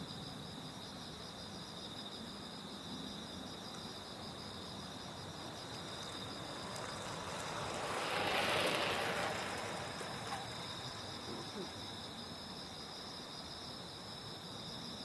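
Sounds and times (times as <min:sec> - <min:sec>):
night insects trilling: 0:00.0 - 0:15.0
vehicle passing: 0:04.8 - 0:11.8.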